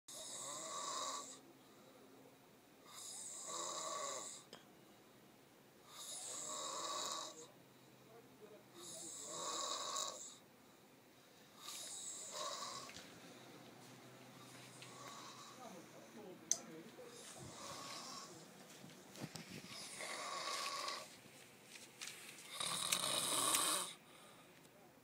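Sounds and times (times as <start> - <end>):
man snoring: 0.1 - 1.4, 2.9 - 4.5, 5.9 - 7.5, 8.8 - 10.4, 11.6 - 13.0, 14.8 - 15.7, 17.3 - 18.4, 19.7 - 21.1, 22.5 - 24.0
quiet breathing: 0.1 - 21.4, 22.1 - 24.9.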